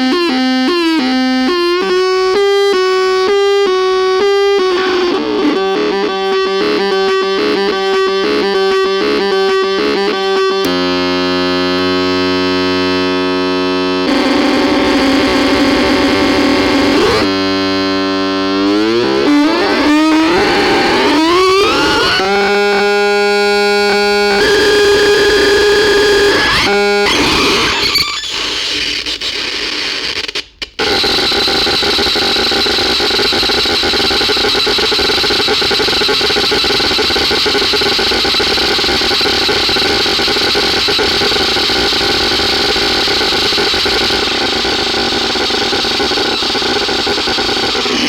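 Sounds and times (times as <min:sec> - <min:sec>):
harsh synthesizer noise: 0:09.4 - 0:28.8, 0:30.8 - 0:48.0.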